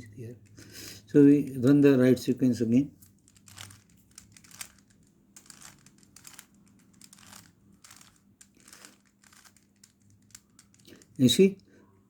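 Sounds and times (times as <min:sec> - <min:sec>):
puzzle cube plastic clicking: 0:03.0 - 0:11.3.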